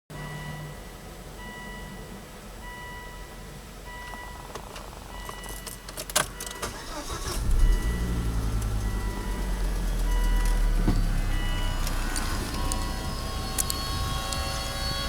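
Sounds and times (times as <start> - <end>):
dashboard warning chime: 0.1 - 15.0
car engine cranking and idling: 3.6 - 15.0
keys rattling: 11.4 - 14.6.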